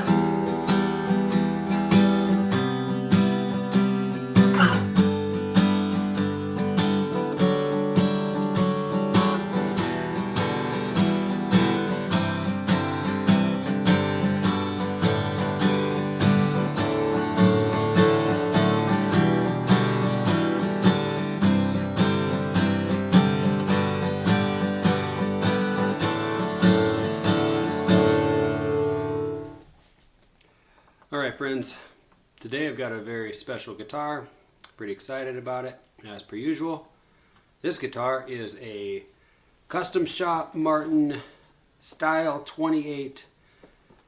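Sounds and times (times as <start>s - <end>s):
acoustic guitar picking: 0.0s - 29.7s.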